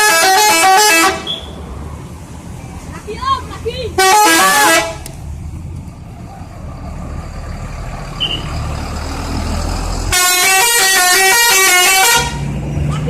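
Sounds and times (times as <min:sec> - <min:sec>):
musical bus horn tune: 0:00.0 - 0:01.4, 0:04.0 - 0:05.0, 0:10.1 - 0:12.6
bus engine rumbling: 0:00.0 - 0:13.0.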